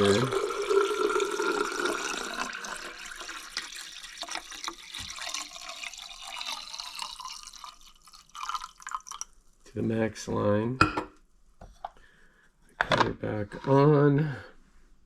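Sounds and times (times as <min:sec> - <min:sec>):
water pouring into reservoir: 0:00.0 - 0:09.4
water dripping: 0:00.0 - 0:09.7.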